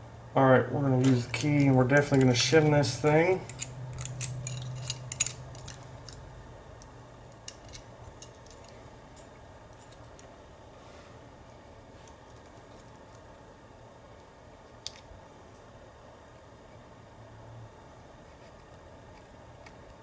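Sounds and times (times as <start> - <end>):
lock and key clicking: 1.0 - 10.3.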